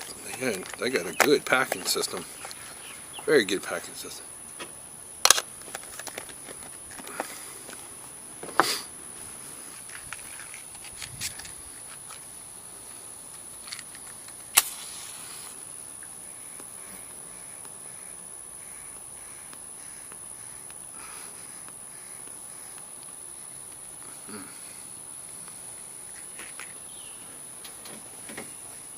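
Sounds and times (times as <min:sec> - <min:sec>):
sharp clicks: 0:00.0 - 0:02.6
insects droning: 0:00.0 - 0:28.9.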